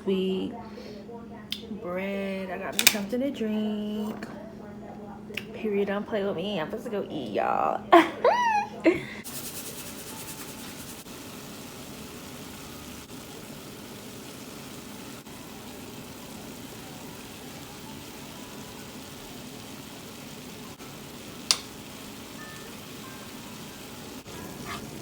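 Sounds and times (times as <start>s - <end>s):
sharp click: 2.8s - 3.1s
oil sizzling in a pan: 9.2s - 25.0s.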